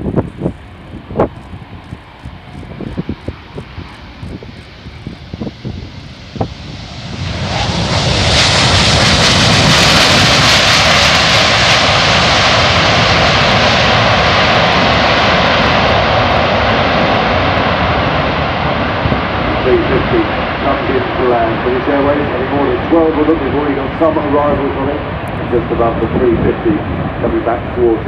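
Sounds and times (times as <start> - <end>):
jet engines roaring: 0.0 - 28.0.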